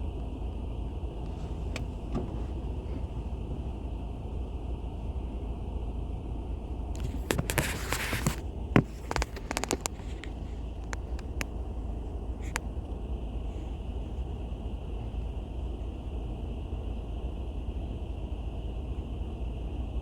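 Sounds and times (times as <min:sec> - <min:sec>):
sharp clicks: 0:08.2 - 0:11.5.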